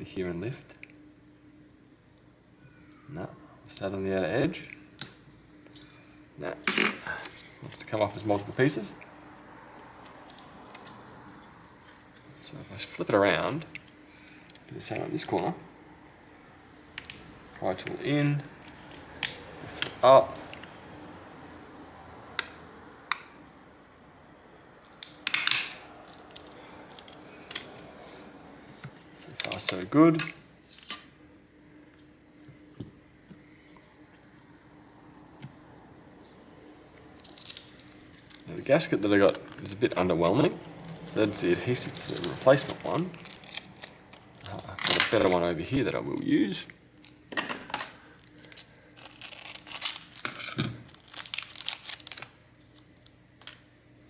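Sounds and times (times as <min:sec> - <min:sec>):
plastic film crinkling and tearing: 0:24.8 - 0:29.9, 0:37.0 - 0:53.7.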